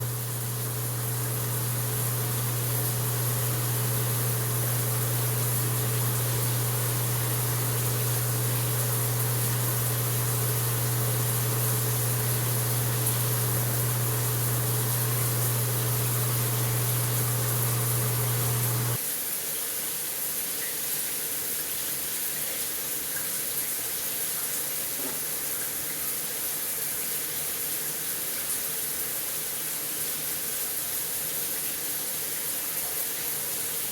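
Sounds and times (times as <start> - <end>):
low steady hum: 0.0 - 19.0
shower water running: 0.0 - 33.9.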